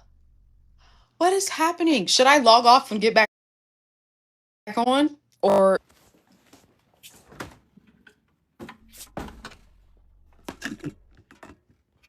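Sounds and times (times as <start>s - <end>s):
fridge door opening: 8.6s - 11.4s.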